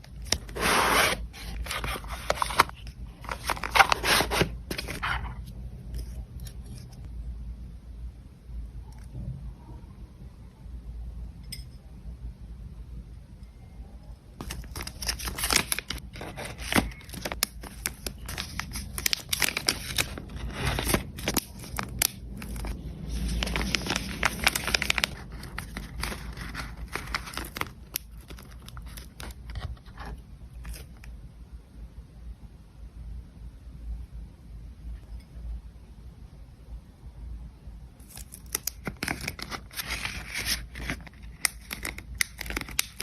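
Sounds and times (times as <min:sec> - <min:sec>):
packaging wrap crinkling and tearing: 0:00.1 - 0:05.3, 0:14.4 - 0:31.1, 0:38.0 - 0:43.0.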